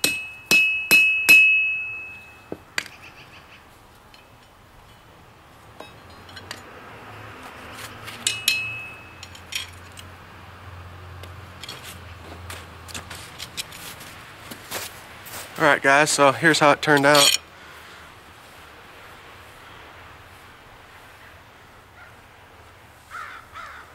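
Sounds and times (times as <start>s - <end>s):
anvil ringing: 0.0s - 2.6s, 8.2s - 9.9s, 17.0s - 17.4s
hammer tapping on anvil: 0.0s - 2.9s, 8.2s - 9.7s
low steady hum: 0.0s - 20.5s.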